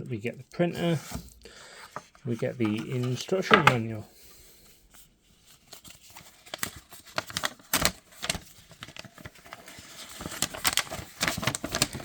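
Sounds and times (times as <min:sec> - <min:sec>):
paper rustling: 0:00.8 - 0:03.8, 0:05.4 - 0:12.0.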